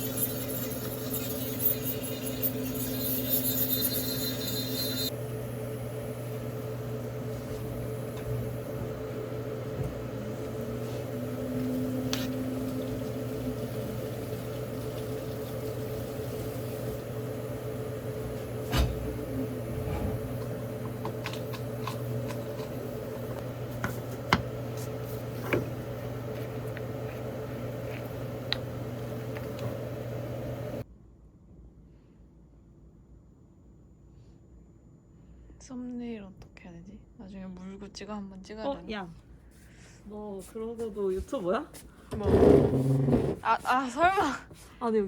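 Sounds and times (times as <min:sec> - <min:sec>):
low machine hum: 0:00.0 - 0:30.9.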